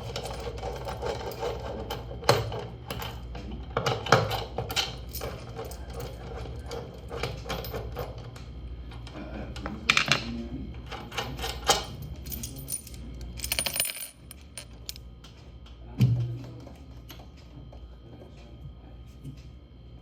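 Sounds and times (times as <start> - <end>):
metallic clinks and knocks: 11.7 - 15.0.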